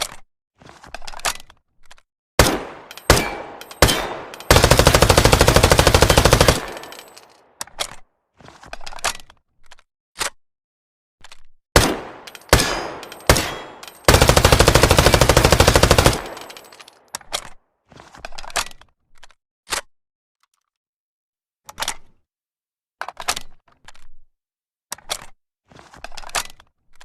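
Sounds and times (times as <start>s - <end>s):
gunshot: 2.4s - 4.3s, 11.8s - 13.8s
automatic gunfire burst: 2.4s - 7.1s, 11.8s - 16.6s
sharp metallic clicks and clanks: 2.4s - 8.0s, 11.8s - 17.5s.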